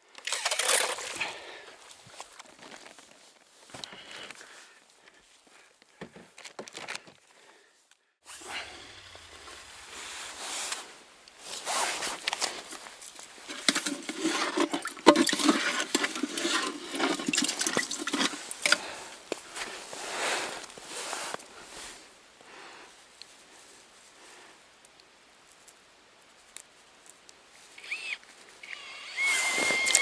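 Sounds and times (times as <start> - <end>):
water sloshing and splashing: 13.5 - 18.8.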